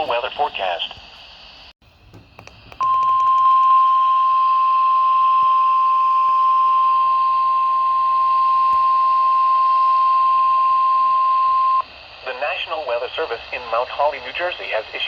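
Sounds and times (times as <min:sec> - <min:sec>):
radio hiss: 0:00.0 - 0:01.7, 0:08.4 - 0:15.0
steady loud alarm beep: 0:02.8 - 0:11.8.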